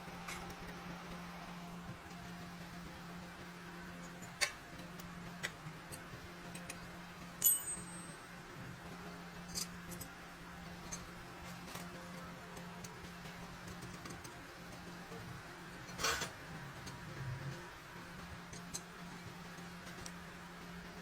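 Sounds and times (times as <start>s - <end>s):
steady low hum: 0.0s - 21.0s
metal parts clicking and tapping: 7.4s - 8.1s, 9.4s - 10.2s, 18.5s - 18.9s
sharp ringing metal clink: 7.4s - 8.2s.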